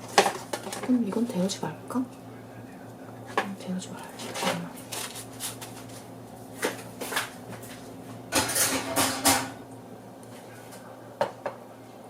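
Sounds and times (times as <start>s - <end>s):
steady low hum: 0.0s - 12.0s
tableware clattering: 8.3s - 9.6s
tableware clicking and knocking: 8.3s - 9.6s.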